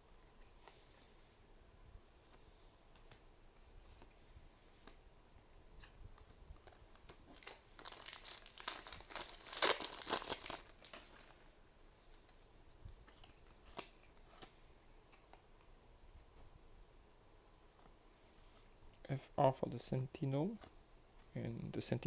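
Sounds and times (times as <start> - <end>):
foil wrapper crinkling and tearing: 7.0 - 11.4.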